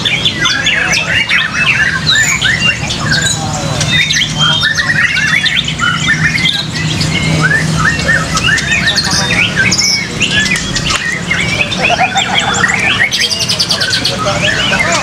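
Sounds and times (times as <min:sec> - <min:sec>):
birds singing whistles and trills: 0:00.0 - 0:15.0.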